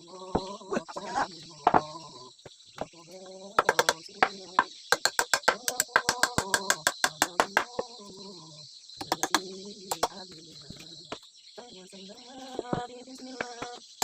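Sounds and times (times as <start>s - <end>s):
crickets chirring: 0.0s - 14.0s.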